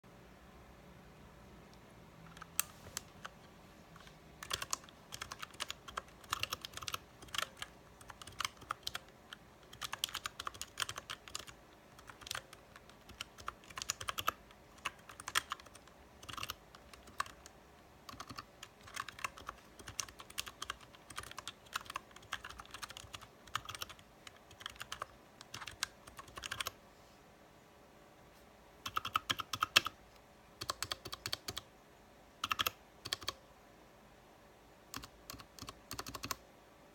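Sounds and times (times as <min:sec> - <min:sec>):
typing on mechanical keyboard: 0:04.0 - 0:26.8, 0:28.8 - 0:30.0, 0:30.6 - 0:31.7, 0:32.4 - 0:33.4, 0:34.9 - 0:36.4.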